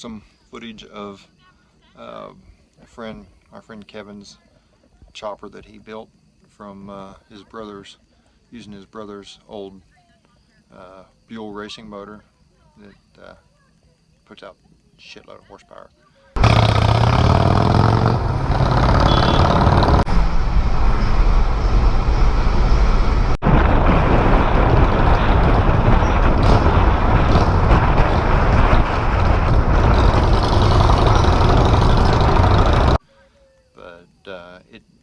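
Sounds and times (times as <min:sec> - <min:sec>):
motorcycle engine revving: 0:16.4 - 0:33.0.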